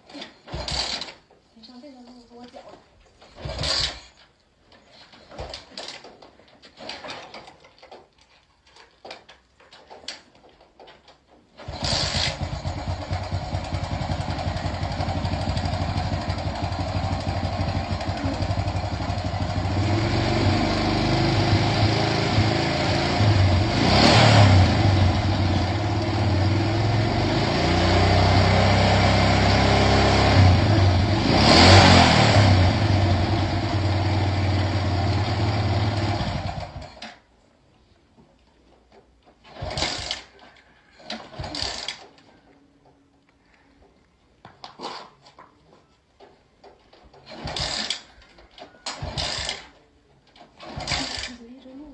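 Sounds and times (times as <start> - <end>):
motorcycle engine starting and running: 0.0 - 1.3, 3.2 - 4.3, 9.1 - 37.3, 38.9 - 42.5, 46.2 - 51.9
motorcycle engine revving: 0.5 - 1.1, 11.6 - 37.0, 39.5 - 40.3, 47.2 - 48.1, 48.9 - 49.8, 50.5 - 51.5.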